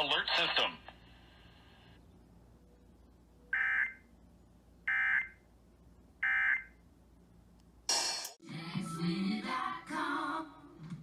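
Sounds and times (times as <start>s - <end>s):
music with singing: 8.4s - 11.0s.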